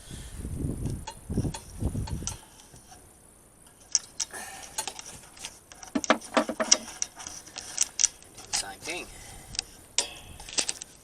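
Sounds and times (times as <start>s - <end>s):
small tools clicking and clinking: 3.7s - 8.7s, 9.5s - 11.0s
short metallic ring: 10.0s - 10.4s.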